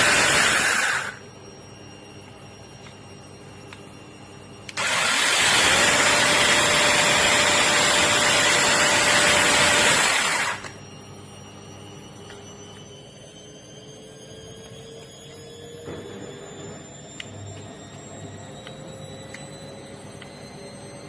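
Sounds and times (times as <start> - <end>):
mini chainsaw running: 0.0 - 1.2, 4.8 - 10.7.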